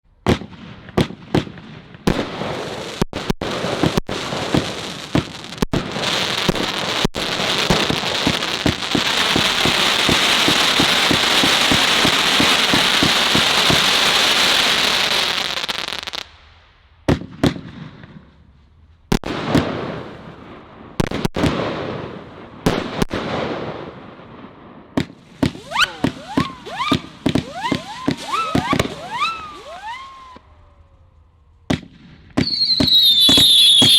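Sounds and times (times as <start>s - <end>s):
firework launch bangs: 7.7s - 14.0s, 25.0s - 30.4s, 31.7s - 33.9s
quick firework pops: 25.0s - 30.4s
dense crackling hiss: 25.2s - 32.3s
shrill gliding whistles: 25.5s - 30.8s, 32.4s - 33.9s.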